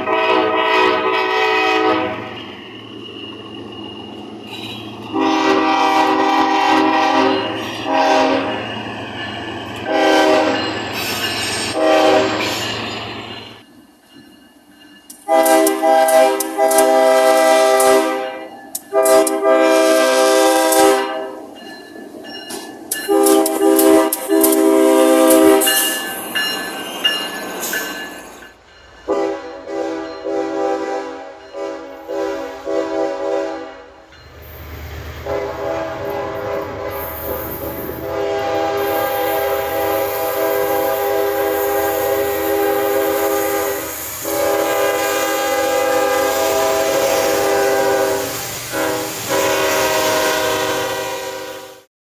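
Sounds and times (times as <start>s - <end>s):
locomotive air horn: 0.0s - 2.3s, 5.0s - 8.6s, 9.8s - 10.7s, 11.8s - 12.5s, 15.2s - 21.4s, 23.1s - 25.8s, 29.1s - 34.0s, 35.2s - 51.9s
passing train: 0.0s - 51.9s
high ringing tone: 2.2s - 5.2s, 25.6s - 28.9s.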